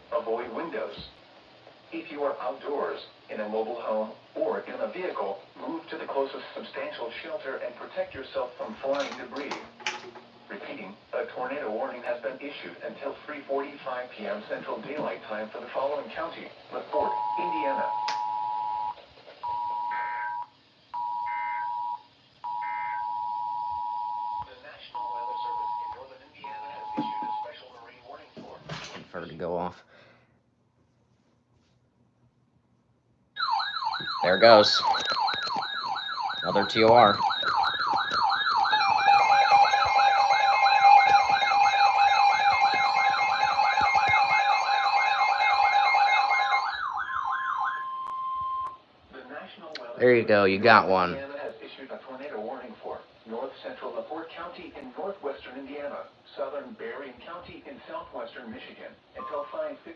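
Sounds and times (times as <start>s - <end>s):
warbling emergency siren: 21.2s - 23.5s, 33.4s - 48.8s.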